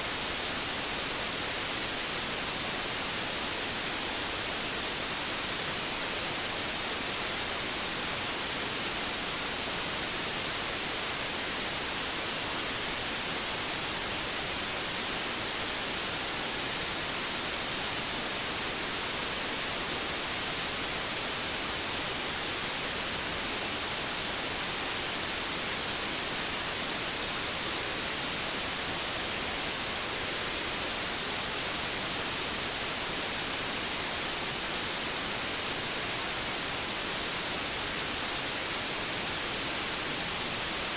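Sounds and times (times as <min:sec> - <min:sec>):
white noise hiss: 0:00.0 - 0:40.9.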